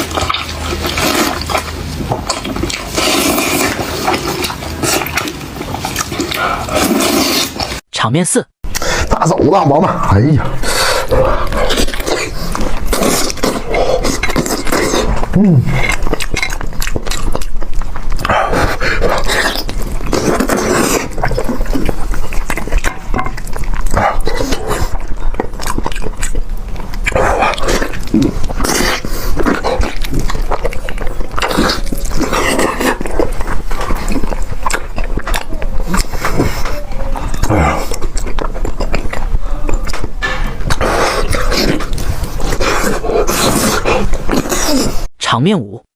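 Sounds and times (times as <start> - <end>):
chewing and mouth smacking: 0.0 - 7.8, 8.7 - 45.1
person grunting: 15.0 - 16.0.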